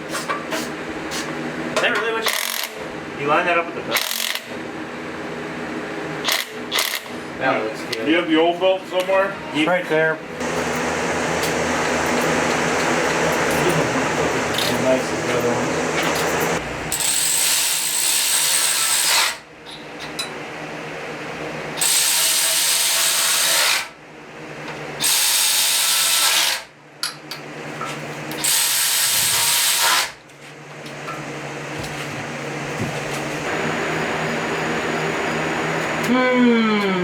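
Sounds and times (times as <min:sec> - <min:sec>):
steady low hum: 0:09.3 - 0:17.0, 0:30.8 - 0:37.0
power tool bursts: 0:28.4 - 0:30.2.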